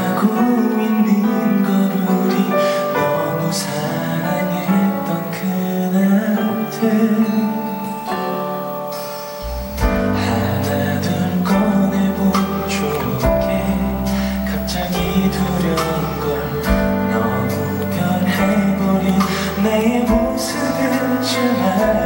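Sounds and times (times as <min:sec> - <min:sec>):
slow pop ballad instrumental: 0:00.0 - 0:22.0
deep bass line: 0:09.4 - 0:22.0.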